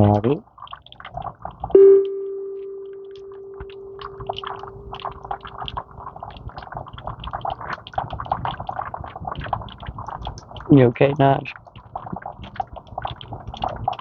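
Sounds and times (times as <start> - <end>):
chime note ringing: 1.8 - 4.9
small clicks and rustles: 5.0 - 14.0.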